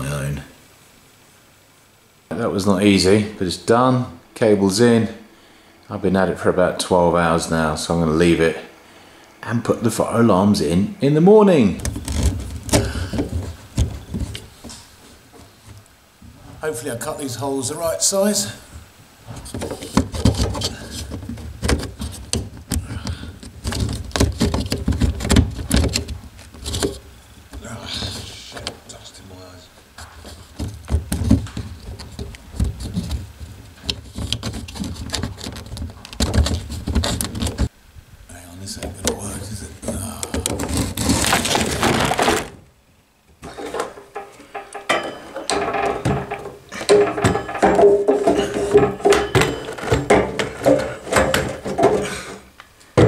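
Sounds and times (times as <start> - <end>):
faint steady hum: 0.0 - 53.0
knocking and scraping in plaster: 11.8 - 16.6, 18.7 - 28.8, 30.0 - 37.7, 39.8 - 42.6, 43.4 - 53.0.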